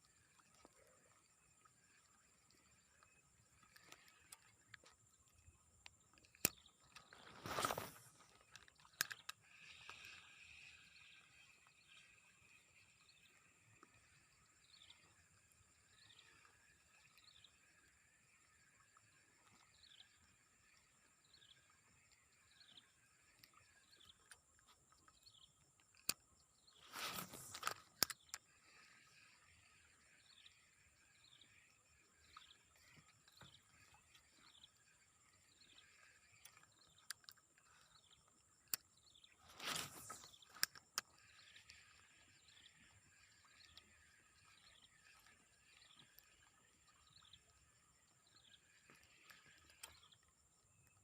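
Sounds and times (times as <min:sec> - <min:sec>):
insect drone: 0:00.0 - 0:51.0
rustling with sharp clicks: 0:06.3 - 0:10.1.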